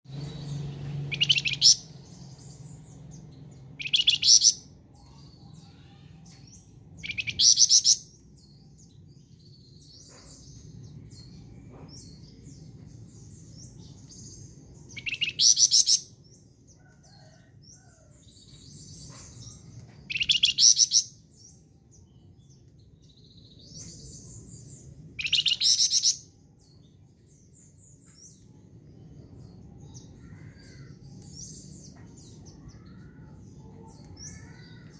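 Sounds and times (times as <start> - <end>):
songbird bursts of rapid notes: 0.1 - 5.2, 25.2 - 26.2
faint bird twittering: 0.1 - 16.2, 16.8 - 21.2, 22.0 - 26.9, 27.6 - 34.9.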